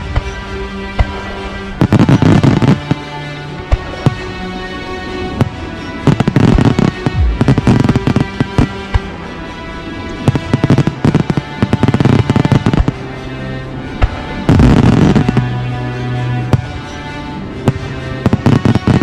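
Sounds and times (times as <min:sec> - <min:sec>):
fireworks banging and crackling: 0:00.0 - 0:03.0, 0:03.7 - 0:04.3, 0:05.3 - 0:09.2, 0:10.2 - 0:13.0, 0:14.0 - 0:15.5, 0:17.6 - 0:19.0
background music with sustained tones: 0:00.0 - 0:19.0.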